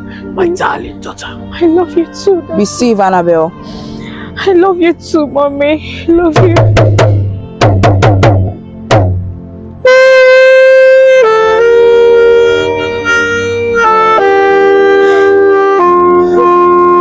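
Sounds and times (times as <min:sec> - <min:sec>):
pitched percussion hits: 0:06.4 - 0:09.4
long held horn-like notes: 0:09.8 - 0:17.0.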